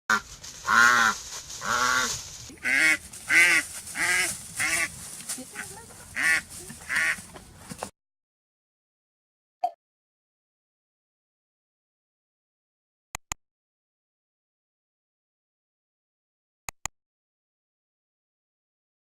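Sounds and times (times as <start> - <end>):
duck calling: 0.1 - 7.3.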